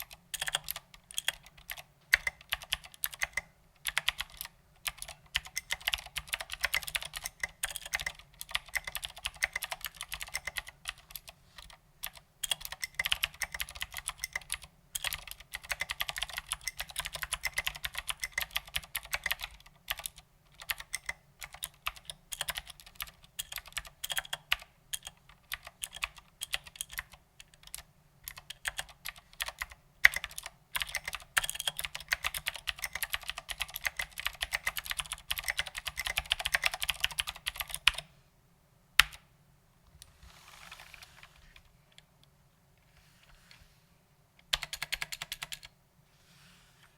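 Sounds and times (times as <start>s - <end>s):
clicky mechanical keyboard typing: 0.0s - 38.1s, 44.4s - 45.8s.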